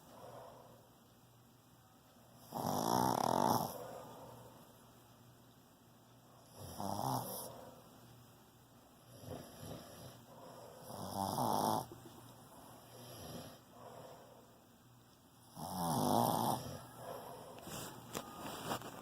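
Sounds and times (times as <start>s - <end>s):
soft snoring breaths: 0.0s - 1.0s, 2.3s - 4.8s, 6.3s - 8.1s, 9.0s - 14.6s, 15.4s - 19.0s
loud snores: 2.4s - 3.8s, 6.5s - 7.6s, 9.1s - 10.2s, 10.8s - 12.0s, 13.0s - 13.6s, 15.5s - 16.8s.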